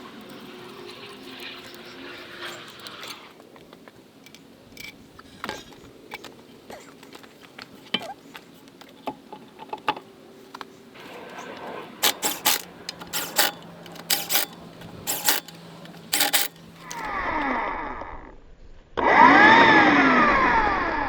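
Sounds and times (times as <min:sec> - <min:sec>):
tools clinking and knocking: 0:12.0 - 0:17.1.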